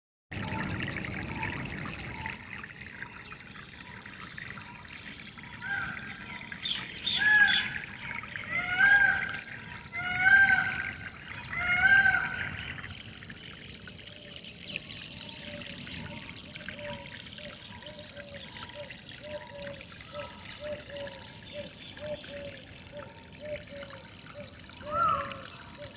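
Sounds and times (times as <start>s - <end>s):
water trickling: 0.3s - 25.9s
loud arched bird calls: 5.6s - 7.8s, 24.8s - 25.5s.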